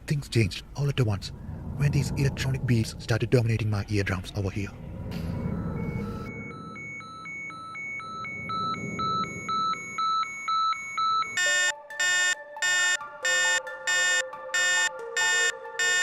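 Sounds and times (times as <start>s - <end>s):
low held electronic notes: 0.8s - 11.4s
electronic beeping: 5.3s - 16.0s.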